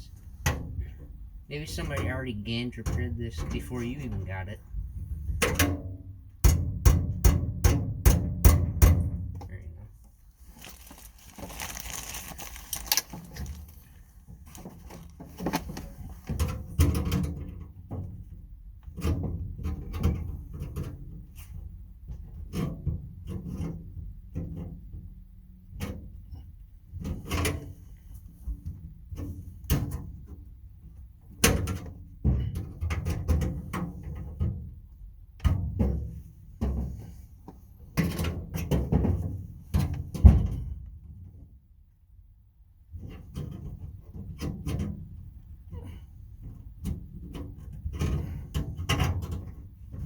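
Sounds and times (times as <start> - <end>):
handling noise: 10.1 - 16.4.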